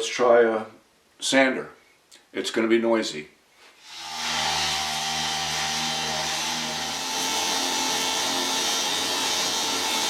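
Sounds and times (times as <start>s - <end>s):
orbital sander running: 3.9s - 10.0s.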